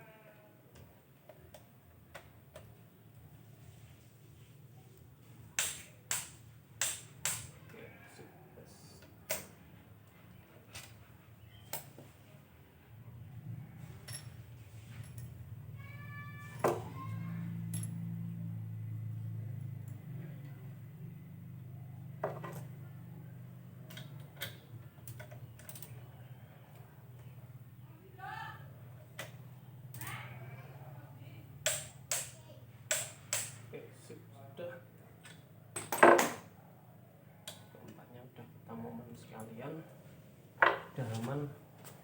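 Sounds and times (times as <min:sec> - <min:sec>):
hand tools clicking on metal: 0:05.6 - 0:07.6, 0:31.6 - 0:33.6.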